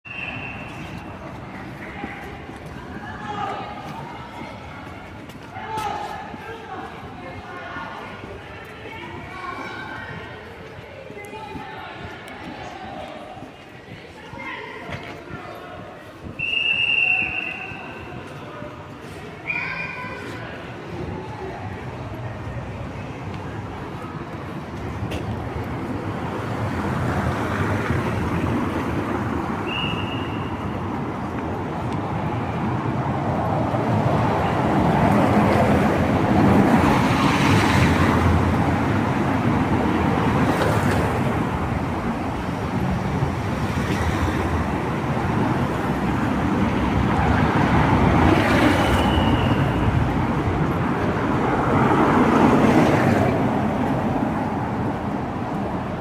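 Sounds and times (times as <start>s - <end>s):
cars passing on wet road: 21.8s - 56.0s.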